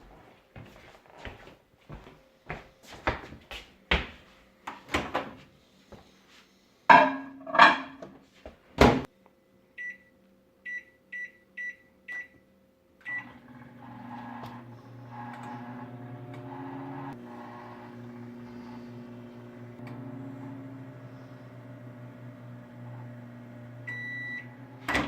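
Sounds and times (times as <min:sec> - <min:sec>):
microwave oven humming: 0:12.3 - 0:25.0.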